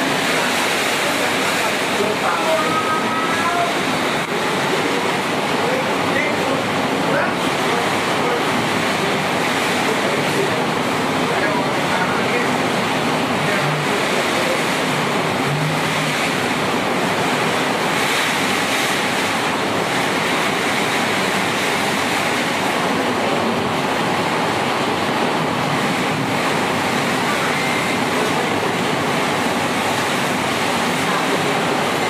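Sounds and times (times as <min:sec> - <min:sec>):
heavy rain pouring: 0:00.0 - 0:32.0
strong wind: 0:00.0 - 0:32.0.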